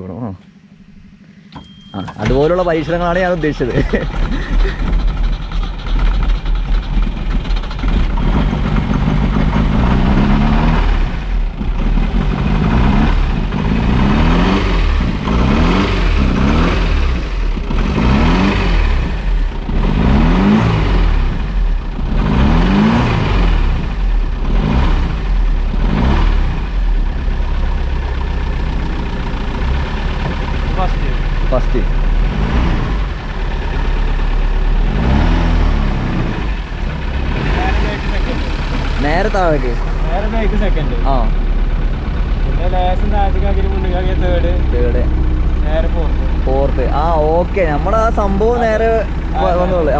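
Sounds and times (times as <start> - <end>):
car engine revving: 0.4 - 49.9.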